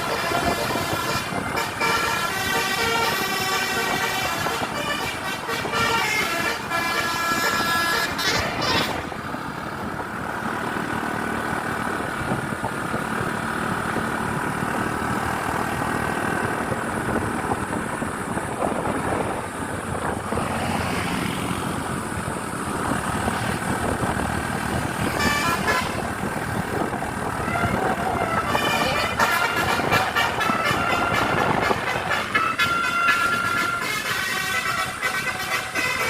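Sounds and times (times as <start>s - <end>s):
multi-tone bus horn: 0.0s - 9.4s, 24.7s - 36.0s
bus engine and road noise: 0.0s - 36.0s.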